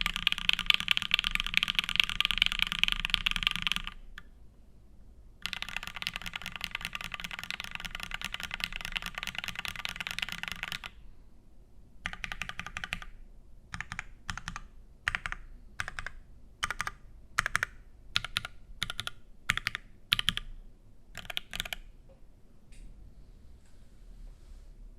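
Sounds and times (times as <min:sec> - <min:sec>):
mechanical keyboard typing: 0:00.0 - 0:04.3, 0:05.4 - 0:11.0, 0:12.0 - 0:20.6, 0:21.2 - 0:21.9.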